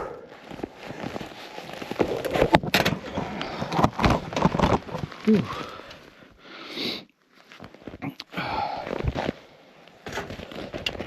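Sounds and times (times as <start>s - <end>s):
footsteps crunching in snow: 0.0s - 2.6s, 7.3s - 11.0s
person grunting: 5.2s - 5.8s, 8.0s - 8.9s
person breathing: 5.3s - 7.1s, 8.3s - 9.6s.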